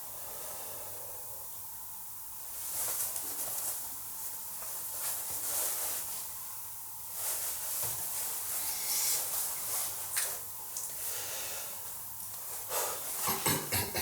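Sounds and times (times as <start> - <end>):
person breathing close: 8.5 - 9.4, 10.9 - 11.9, 12.6 - 13.4.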